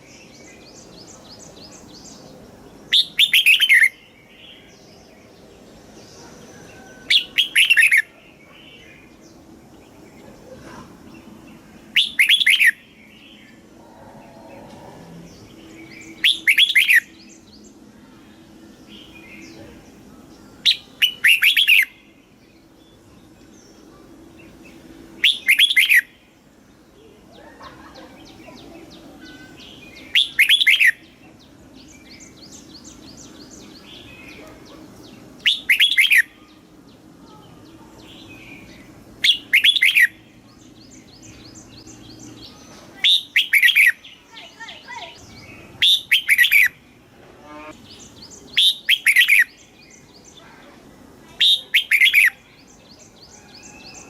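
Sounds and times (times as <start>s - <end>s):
bulbul singing: 0.0s - 10.4s, 11.1s - 50.6s, 51.2s - 54.0s
faint bird chirps: 26.8s - 54.0s.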